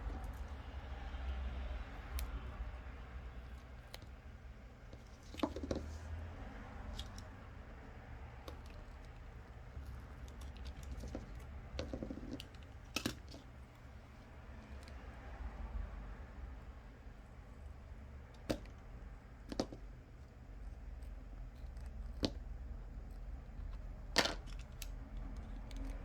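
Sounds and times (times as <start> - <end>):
adhesive strips clicking and crinkling: 23.1 - 26.0.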